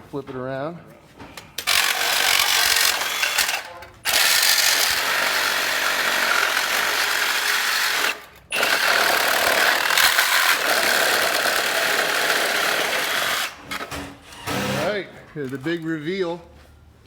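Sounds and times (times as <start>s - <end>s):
power tool cutting metal: 1.6s - 15.0s.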